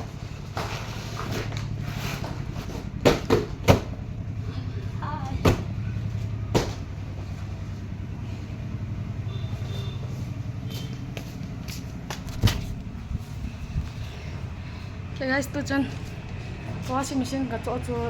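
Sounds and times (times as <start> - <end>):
vehicle engine hum: 0.0 - 18.0.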